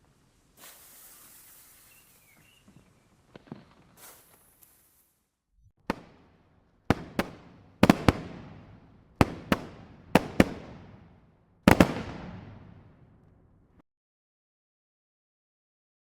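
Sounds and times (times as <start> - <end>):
fireworks bangs with echo: 5.8 - 13.2.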